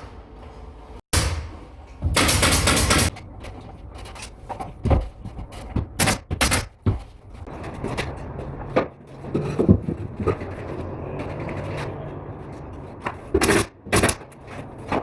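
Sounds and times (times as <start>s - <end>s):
carpentry knocks and clatters: 0.0s - 11.7s.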